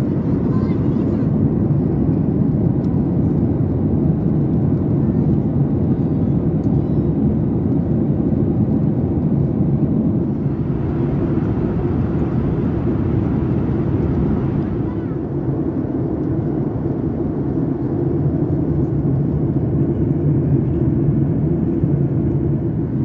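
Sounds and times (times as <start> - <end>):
airliner cabin rumble: 0.0 - 23.0.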